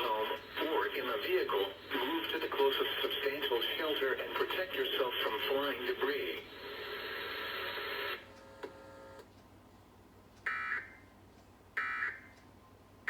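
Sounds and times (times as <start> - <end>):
broadcast noise: 0.0 - 8.2.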